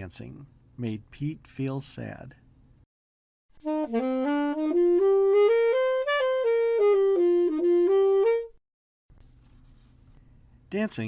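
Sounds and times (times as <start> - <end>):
solo saxophone melody: 3.6 - 8.6.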